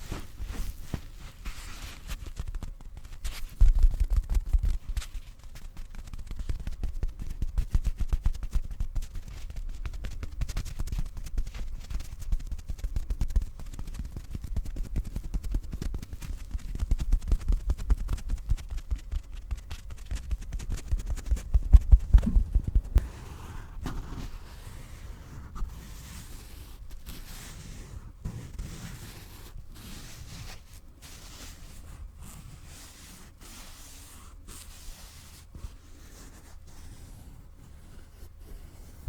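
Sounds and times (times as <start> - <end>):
fabric rubbing and rustling: 0.0 - 39.0
fingers tapping a pillow: 2.4 - 23.1.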